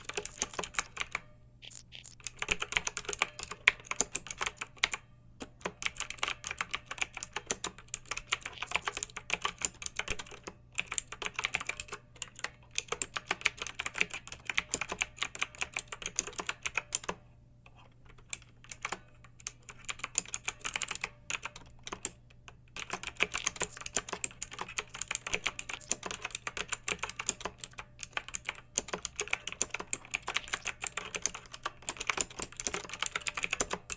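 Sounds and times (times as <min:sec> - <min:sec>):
typing on a keyboard: 0:00.0 - 0:33.9.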